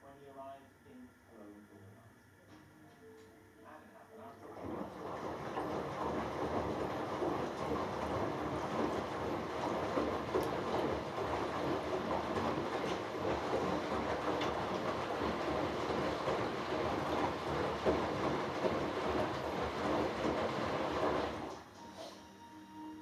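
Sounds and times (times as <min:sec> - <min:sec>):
washing machine drum churning: 0:04.4 - 0:21.8.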